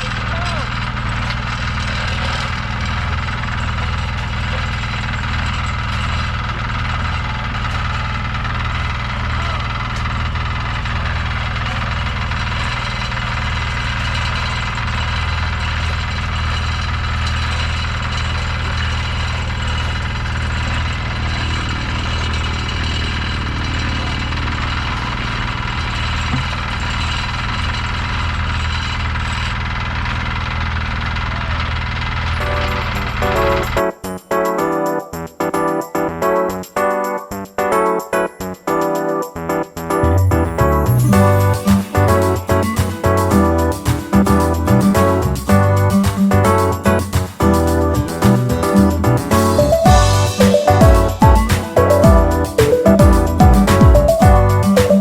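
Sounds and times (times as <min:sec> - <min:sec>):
engine running steadily: 0:00.0 - 0:33.8
machinery hiss and rattle: 0:41.4 - 0:50.7.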